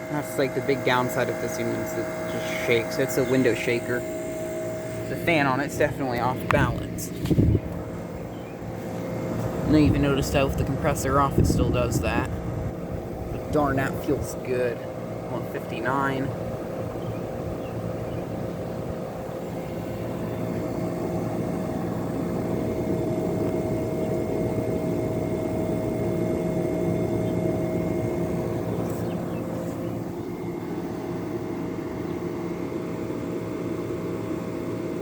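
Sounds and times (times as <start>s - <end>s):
held tones: 0.0s - 11.5s
air conditioner hum and fan air: 0.0s - 35.0s.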